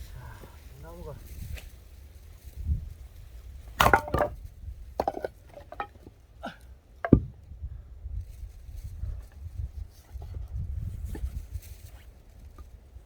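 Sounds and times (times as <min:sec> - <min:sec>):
axe splitting firewood: 0:03.7 - 0:06.2, 0:07.0 - 0:07.4
wood knocking: 0:03.8 - 0:04.4, 0:05.0 - 0:06.1, 0:07.0 - 0:07.4.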